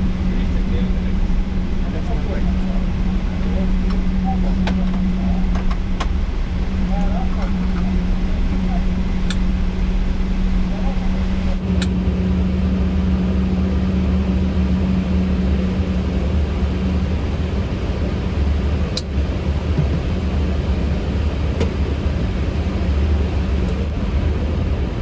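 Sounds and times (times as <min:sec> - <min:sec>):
aircraft engines low rumble: 0:00.0 - 0:25.0
hum: 0:11.6 - 0:25.0
faint clicks: 0:11.7 - 0:15.8.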